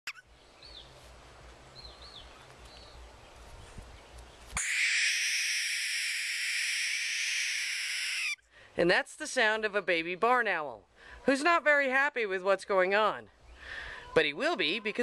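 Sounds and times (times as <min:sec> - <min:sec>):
barn owl hiss-screech: 0:04.6 - 0:08.4.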